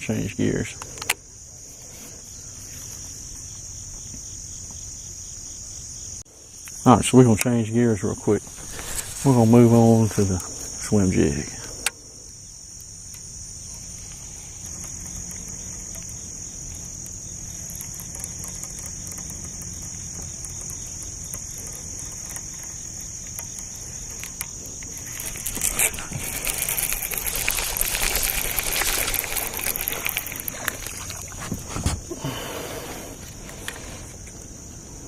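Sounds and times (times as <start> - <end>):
insect chorus drone: 0.0 - 35.0
rustling clicking noise: 0.8 - 1.2, 11.6 - 32.1, 33.2 - 34.5.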